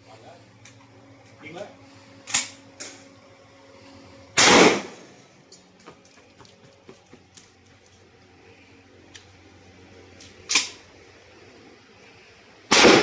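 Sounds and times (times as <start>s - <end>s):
shotgun shot: 4.4s - 5.1s, 12.7s - 13.0s.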